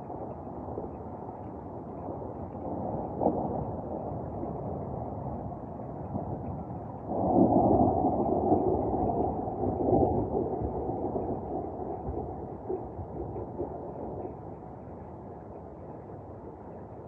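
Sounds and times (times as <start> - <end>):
low background noise: 0.0 - 17.0
thunder rumbling: 2.1 - 15.8.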